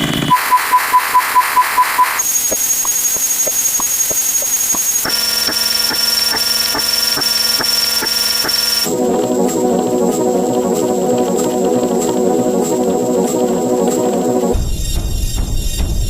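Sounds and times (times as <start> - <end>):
fast electronic beeping: 0.2 - 8.9
high-pitched whistle: 0.3 - 8.9
high tone with regular ticks: 2.1 - 14.2.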